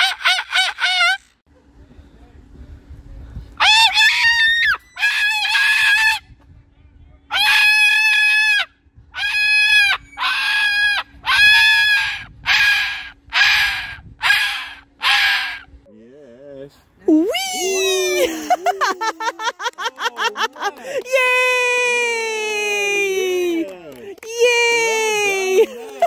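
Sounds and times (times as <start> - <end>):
cockatoo calling loudly: 3.6 - 6.2, 7.3 - 15.8.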